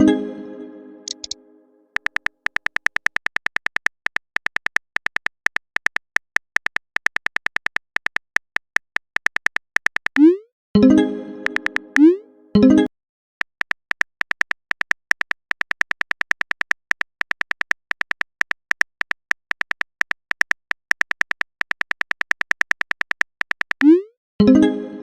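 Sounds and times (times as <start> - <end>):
phone keyboard typing clicks: 1.0 - 1.4, 2.0 - 10.4, 11.4 - 12.2, 13.4 - 24.0.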